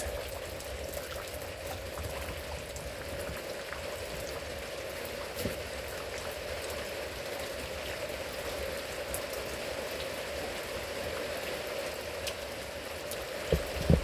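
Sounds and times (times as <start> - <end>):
steady rain: 0.0 - 14.0
faint drip ticks: 12.2 - 14.0.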